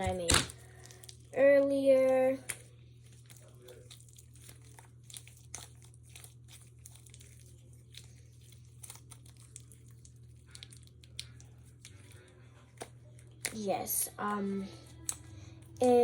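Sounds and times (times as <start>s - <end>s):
steady low hum: 0.0s - 16.0s
slime crackling and clicking: 2.0s - 12.2s.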